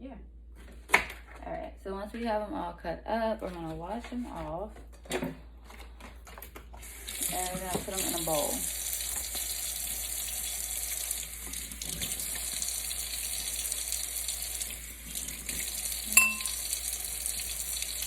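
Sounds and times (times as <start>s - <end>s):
tap running into sink: 7.2s - 9.5s
sharp ringing clink: 16.2s - 16.6s.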